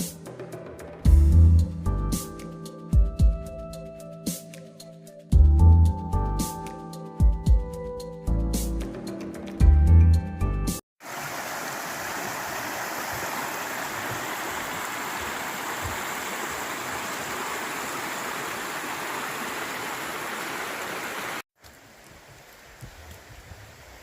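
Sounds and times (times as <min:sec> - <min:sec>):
rushing creek water: 0:11.0 - 0:24.0.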